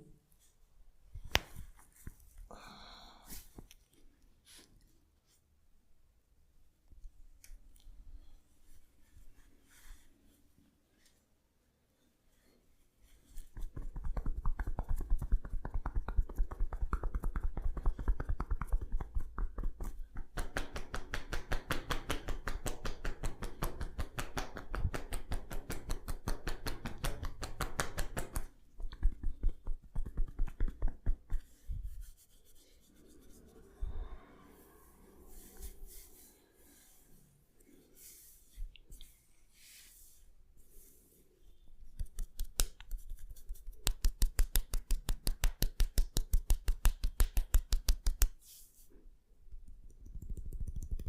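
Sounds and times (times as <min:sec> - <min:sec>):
hands rubbing through hair: 0:13.0 - 0:33.8, 0:34.4 - 0:41.2, 0:41.8 - 0:48.9.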